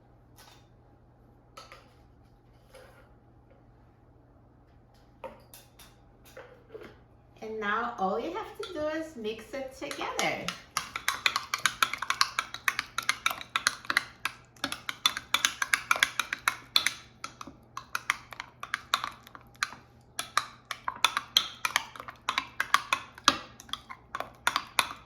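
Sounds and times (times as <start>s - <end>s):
utensil stirring in a container: 8.2s - 25.0s.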